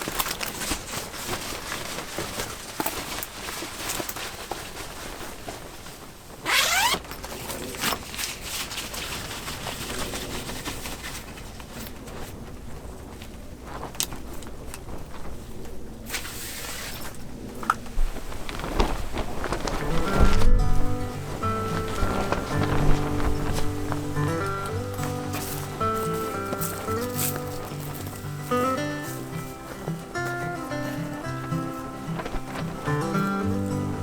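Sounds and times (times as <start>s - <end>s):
gear clicking and rustling: 0.0s - 34.0s
zipper pulled open: 6.4s - 8.0s.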